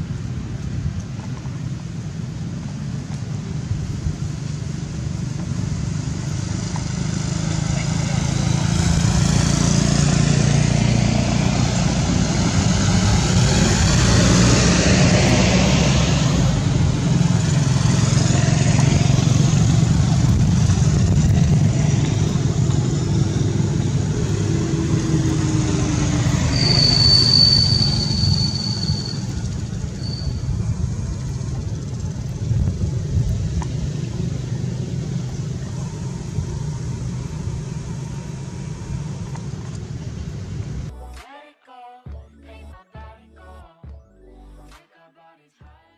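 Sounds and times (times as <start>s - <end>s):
vehicle engine running: 0.0s - 41.2s
brief high-pitched squeal: 26.3s - 30.6s.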